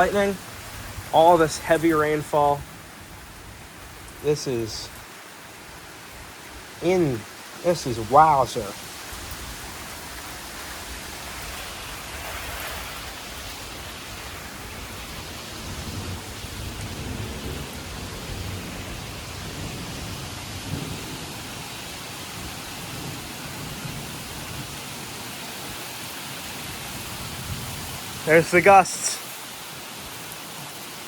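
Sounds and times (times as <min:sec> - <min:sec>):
heavy rain falling: 0:00.0 - 0:31.0
thunder rumbling: 0:14.5 - 0:21.6.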